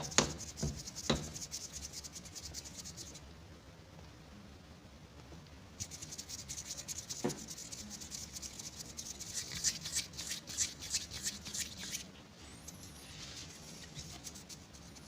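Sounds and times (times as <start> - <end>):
dry crackly rustling and scratching: 5.8 - 12.1, 13.2 - 15.0.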